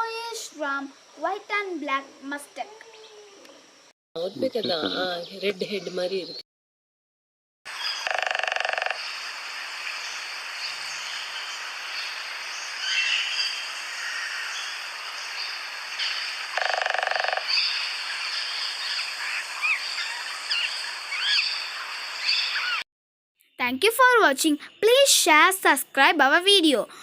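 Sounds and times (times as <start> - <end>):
steady outdoor hiss: 0.0 - 6.3, 7.7 - 22.8, 23.8 - 27.0
harsh buzzy bird call: 11.0 - 22.8
whistled bird notes: 17.5 - 22.8.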